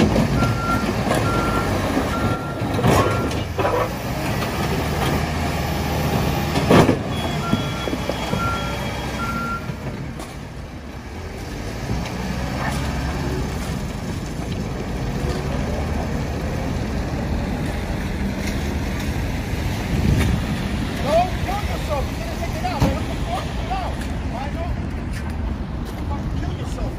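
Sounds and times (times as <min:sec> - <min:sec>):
truck engine rumbling: 0:00.0 - 0:26.9
reversing alarm beeps: 0:00.4 - 0:03.5, 0:07.1 - 0:09.8.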